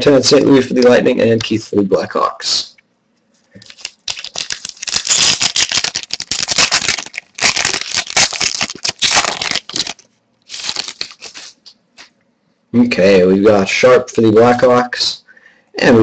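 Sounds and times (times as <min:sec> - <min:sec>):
wrapper tearing and crinkling: 0:03.6 - 0:12.1.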